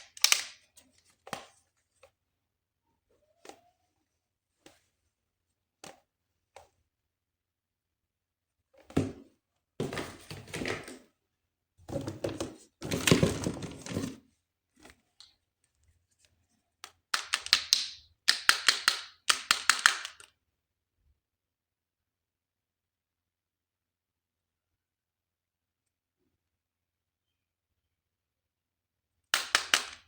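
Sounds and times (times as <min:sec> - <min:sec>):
plastic packaging rustling: 0:12.8 - 0:14.2.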